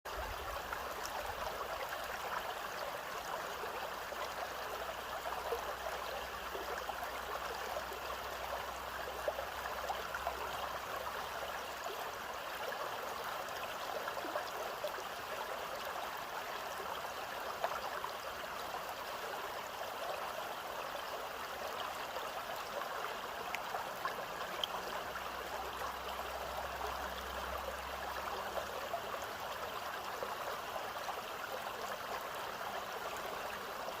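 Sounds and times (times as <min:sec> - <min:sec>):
water flowing and trickling: 0:00.1 - 0:34.0.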